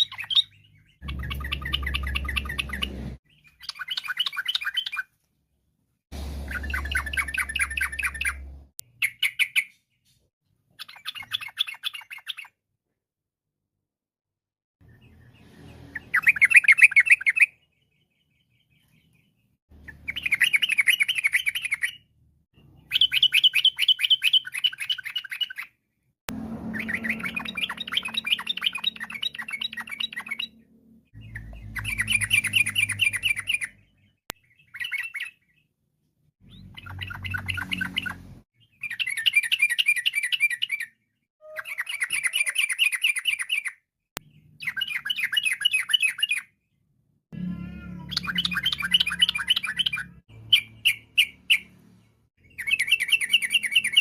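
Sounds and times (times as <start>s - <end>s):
bird singing chattering notes: 0.0s - 5.0s, 6.5s - 9.7s, 26.8s - 35.4s, 48.0s - 51.7s.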